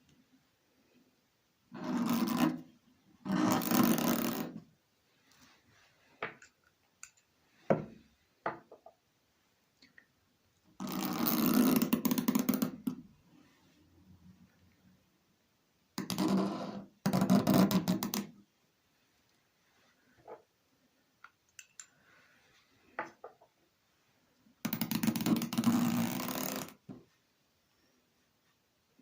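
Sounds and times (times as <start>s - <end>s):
writing tool squeaking: 3.2s - 4.5s.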